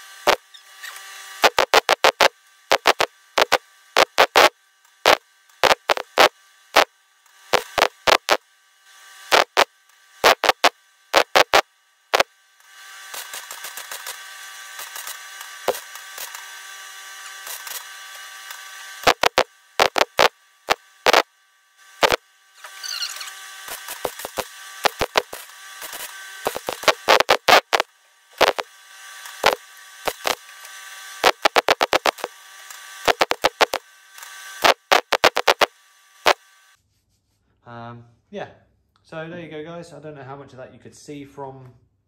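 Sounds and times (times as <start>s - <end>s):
welder crackling: 0.0s - 6.9s, 7.5s - 8.4s, 9.3s - 12.3s, 13.0s - 16.6s, 17.2s - 21.3s, 22.0s - 36.4s
faint steady hum: 0.0s - 12.6s, 19.0s - 28.7s.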